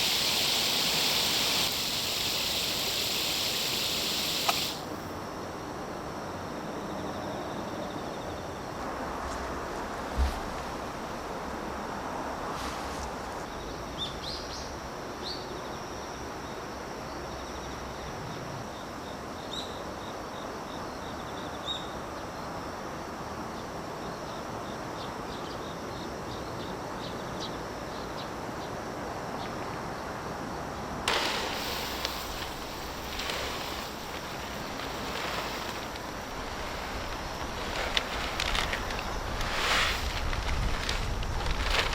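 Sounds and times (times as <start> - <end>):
rush of wind or water: 0.0 - 5.4, 30.9 - 41.9
faint insect-like ticking: 31.1 - 39.4.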